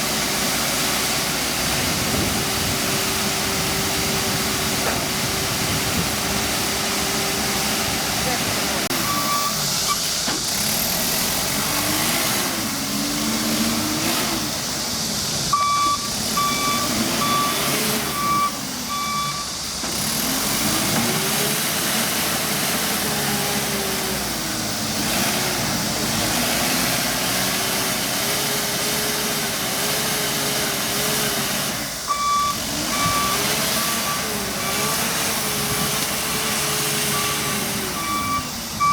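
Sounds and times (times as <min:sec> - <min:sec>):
diesel engine revving: 0:00.0 - 0:38.9
reversing alarm beeping: 0:08.9 - 0:10.1, 0:15.5 - 0:19.6, 0:32.1 - 0:35.6, 0:36.5 - 0:38.9.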